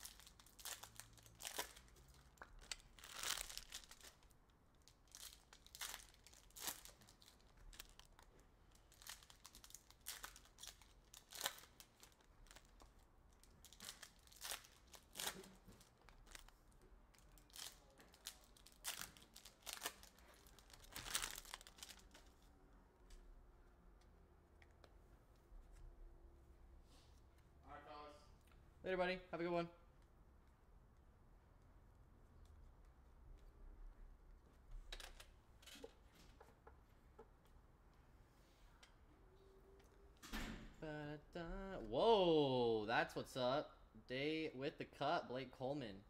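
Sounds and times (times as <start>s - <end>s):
foil wrappers tearing and crinkling: 0.0s - 12.8s, 13.4s - 16.5s, 17.3s - 22.2s.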